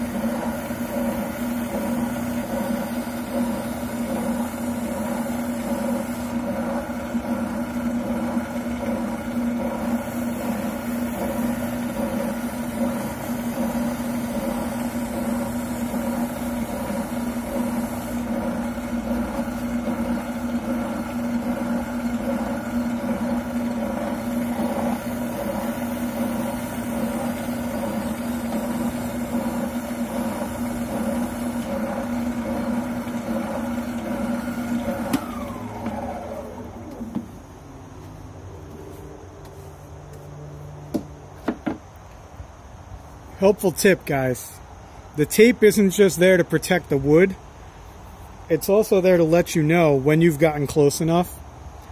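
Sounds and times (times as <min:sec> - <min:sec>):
buttplate grinding against sander: 0:00.0 - 0:37.3
oscillating sander humming: 0:00.0 - 0:40.0.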